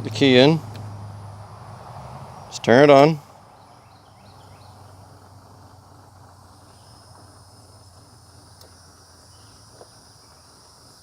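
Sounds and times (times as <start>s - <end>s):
insects chirring: 0.0s - 11.0s
small tick: 8.6s - 8.8s.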